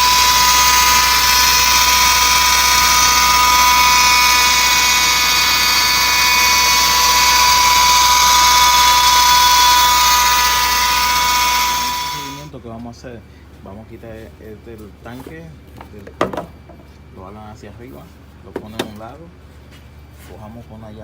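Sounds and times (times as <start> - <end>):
high-pitched belt whine: 0.0 - 12.5.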